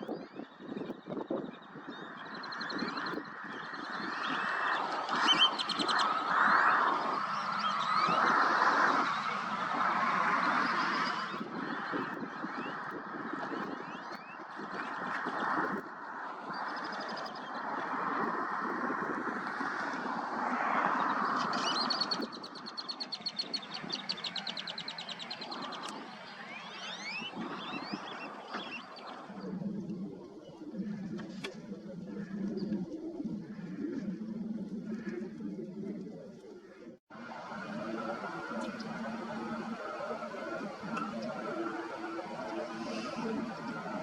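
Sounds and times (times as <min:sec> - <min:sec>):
ducks calling: 0:02.0 - 0:44.0
songbird trilling: 0:21.4 - 0:29.4
rushing noise: 0:37.1 - 0:44.0.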